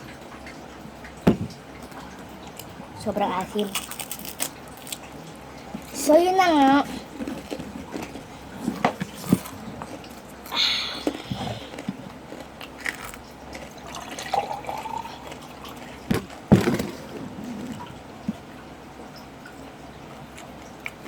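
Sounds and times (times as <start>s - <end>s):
chewing crunchy food: 3.4s - 6.0s, 6.8s - 18.4s, 19.5s - 21.0s.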